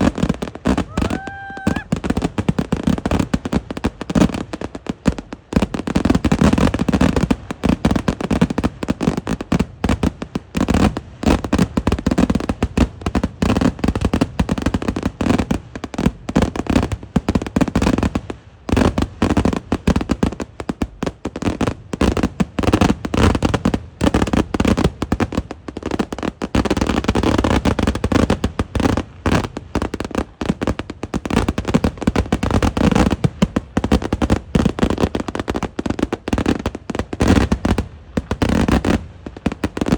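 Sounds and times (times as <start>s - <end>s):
rapid firework explosions: 0.0s - 4.6s.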